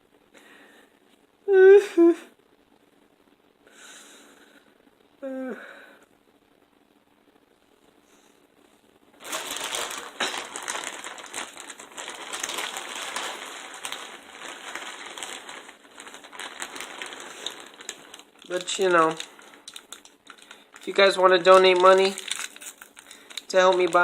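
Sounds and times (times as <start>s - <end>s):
close crinkling and crackling: 9.2s - 24.0s.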